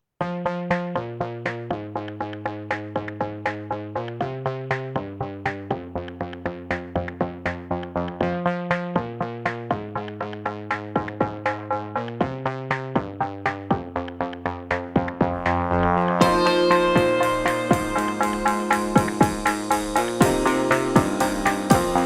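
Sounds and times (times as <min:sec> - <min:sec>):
upbeat electronic music: 0:00.4 - 0:22.0.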